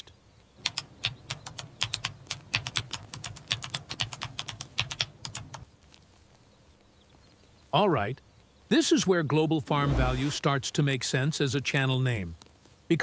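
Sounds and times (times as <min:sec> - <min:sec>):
keyboard typing: 0:00.6 - 0:05.6.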